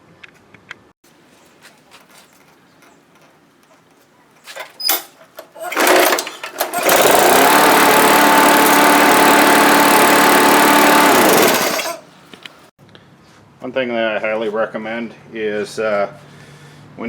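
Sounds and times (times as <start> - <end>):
lawn mower engine cranking: 1.9 - 12.6
lawn mower engine running: 4.5 - 12.7.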